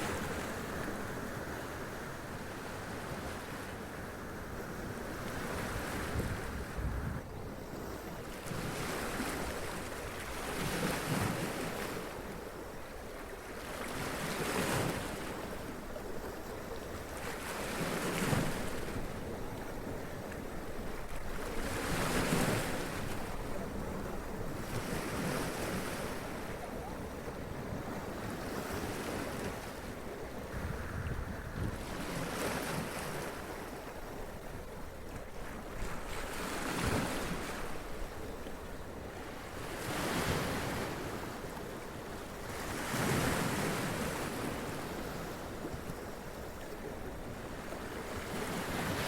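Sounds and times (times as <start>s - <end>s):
wind noise on microphone: 5.6s - 7.3s, 30.4s - 32.8s.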